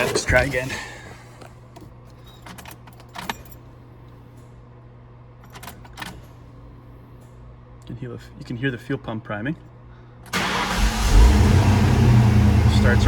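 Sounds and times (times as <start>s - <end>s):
car keys jangling: 2.0s - 3.7s.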